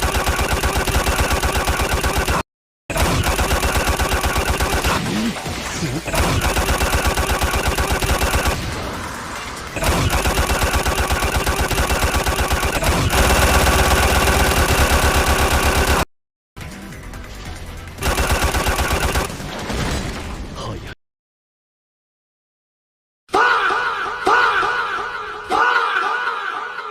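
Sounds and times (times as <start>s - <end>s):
rapid automatic gunfire: 0.0s - 8.8s, 9.8s - 16.1s, 18.0s - 19.4s.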